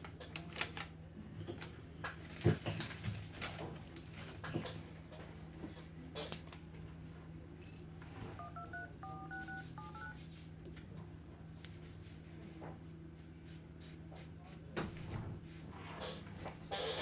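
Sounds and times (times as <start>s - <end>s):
faint steady hum: 4.9s - 15.8s
phone keypad dialing tones: 8.4s - 10.2s.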